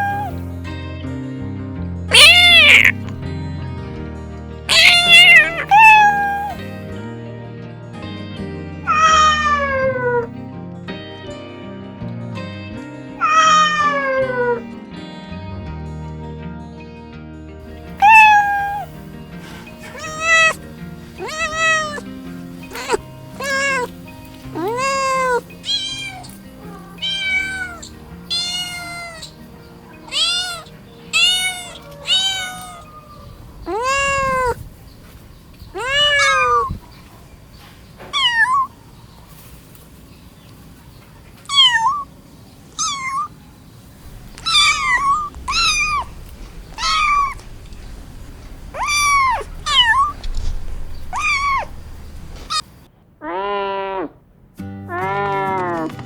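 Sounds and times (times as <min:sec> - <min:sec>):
cats meowing: 0:00.0 - 0:00.5, 0:02.1 - 0:03.3, 0:04.7 - 0:06.7, 0:08.9 - 0:10.3, 0:13.2 - 0:14.7, 0:17.8 - 0:34.7, 0:35.6 - 0:37.1, 0:38.0 - 0:38.8, 0:41.4 - 0:42.1, 0:42.7 - 0:43.4, 0:44.1 - 0:54.1, 0:54.9 - 0:56.0
faint background music: 0:00.0 - 0:52.9.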